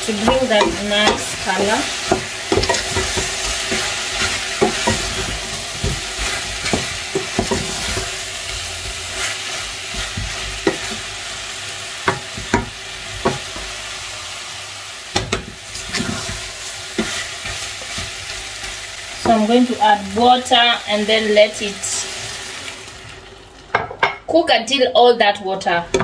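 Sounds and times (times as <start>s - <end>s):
food sizzling in a pot: 0.0s - 24.5s
spoon stirring and scraping pot: 0.1s - 11.2s, 15.2s - 19.4s
spoon knocking against pot: 0.2s - 1.4s, 12.0s - 13.4s.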